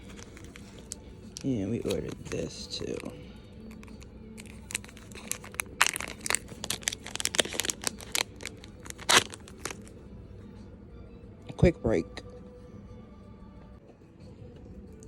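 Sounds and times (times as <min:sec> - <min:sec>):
packaging crinkling and tearing: 0:00.0 - 0:09.9.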